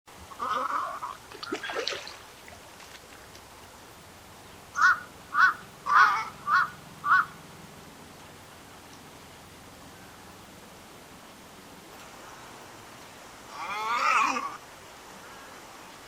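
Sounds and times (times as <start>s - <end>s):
egret croaking calls: 0.2s - 1.8s, 4.7s - 7.4s, 13.5s - 14.6s.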